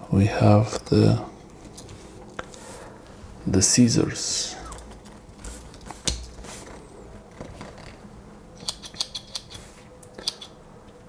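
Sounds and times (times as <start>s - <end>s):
small scissors clicking: 8.6s - 10.6s.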